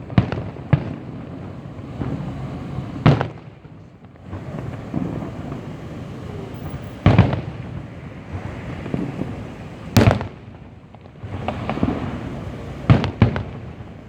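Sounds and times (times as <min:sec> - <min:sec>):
firework crackle: 0:00.0 - 0:14.0
firework shells bursting: 0:08.7 - 0:13.9.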